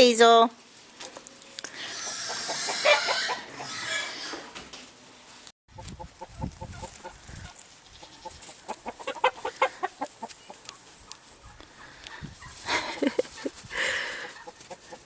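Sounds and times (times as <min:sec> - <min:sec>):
chickens clucking: 0:01.8 - 0:04.5, 0:05.7 - 0:15.0.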